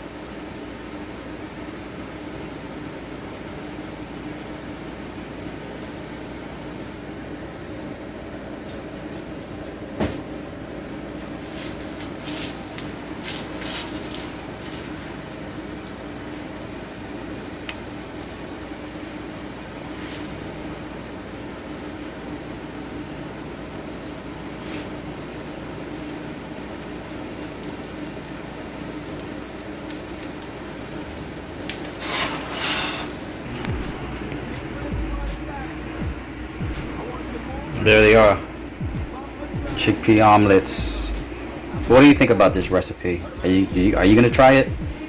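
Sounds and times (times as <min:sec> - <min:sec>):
steady hum: 0:00.0 - 0:45.0
batter sizzling in a frying pan: 0:09.5 - 0:42.4
short hissy scrapes: 0:31.9 - 0:33.3
low hum: 0:33.4 - 0:45.0.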